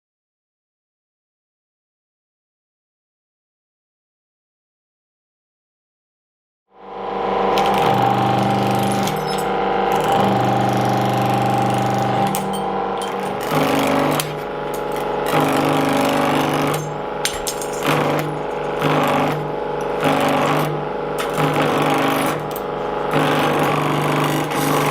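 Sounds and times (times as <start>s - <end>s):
sheet metal machine ram clattering: 16.7s - 19.1s.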